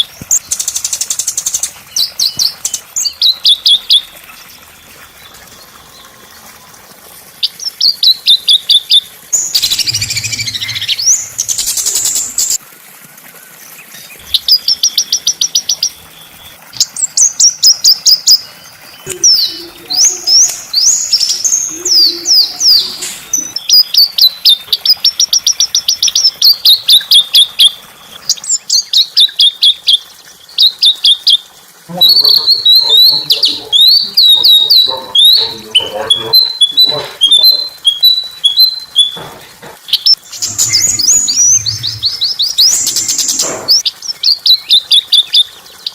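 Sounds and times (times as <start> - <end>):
songbird chirping: 0.0 - 12.6, 13.8 - 27.3, 28.1 - 45.9
brief rushing noise: 9.6 - 11.6.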